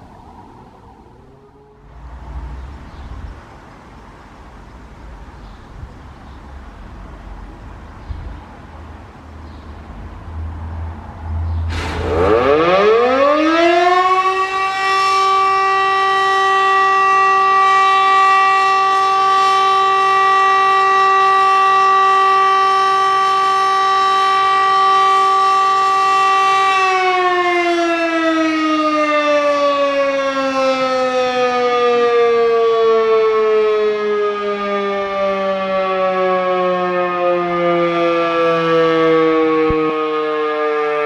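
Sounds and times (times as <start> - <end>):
electric motor siren: 0.0 - 2.1, 12.0 - 41.0.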